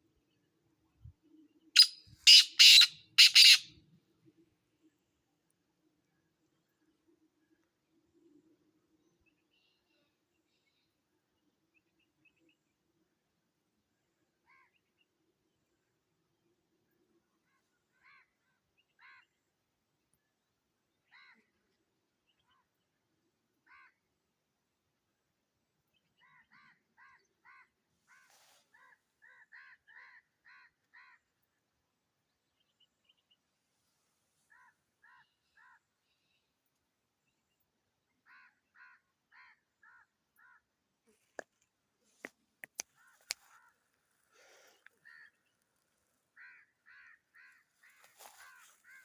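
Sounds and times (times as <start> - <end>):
bird calling harsh notes: 1.8 - 3.7.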